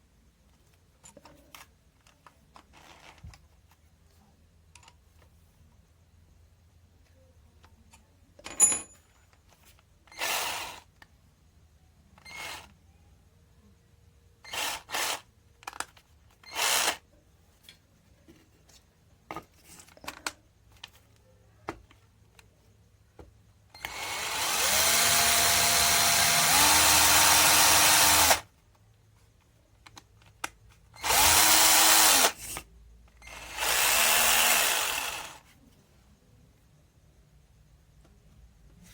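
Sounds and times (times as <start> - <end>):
cordless drill motor whirring: 10.2 - 10.9, 12.2 - 12.7, 14.5 - 15.2, 16.4 - 17.0, 23.8 - 28.4, 31.0 - 32.6, 33.2 - 35.4.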